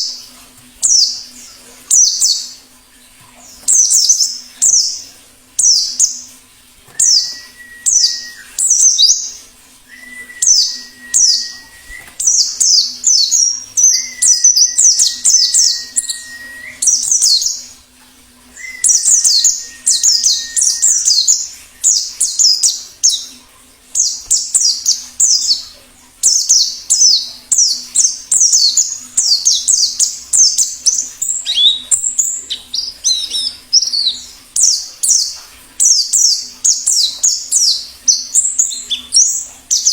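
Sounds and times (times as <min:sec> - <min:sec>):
birds singing high chirps: 0:00.0 - 0:02.7, 0:03.3 - 0:17.8, 0:18.5 - 0:39.9
flat whistle-like tone: 0:06.9 - 0:08.6, 0:09.9 - 0:12.2, 0:13.8 - 0:14.8, 0:15.6 - 0:17.0, 0:18.6 - 0:21.9.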